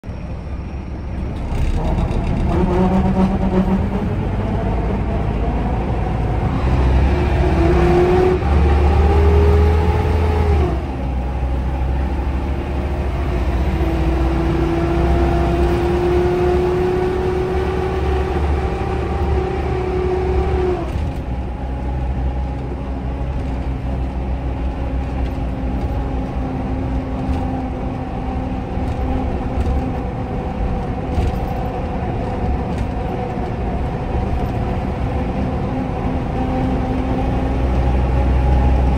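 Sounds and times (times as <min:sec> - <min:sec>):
bus engine pulling away: 0:00.0 - 0:38.9.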